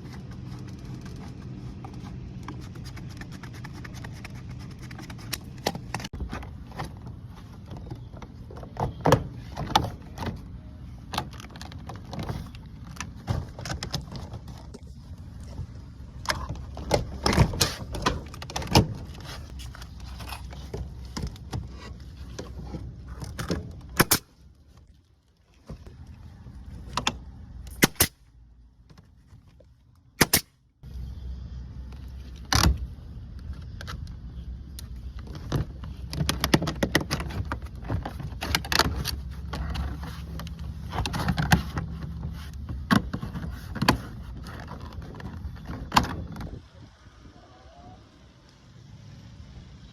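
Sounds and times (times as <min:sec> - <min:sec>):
sharp cracks: 0:27.7 - 0:28.2, 0:30.2 - 0:30.6.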